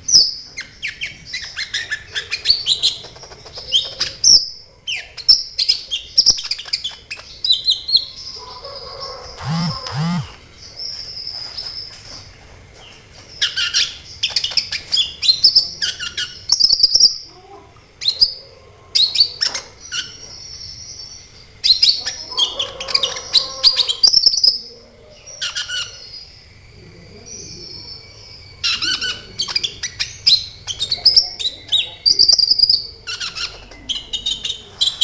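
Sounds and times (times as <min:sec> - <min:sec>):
bird chirping and trilling: 0:06.4 - 0:10.4.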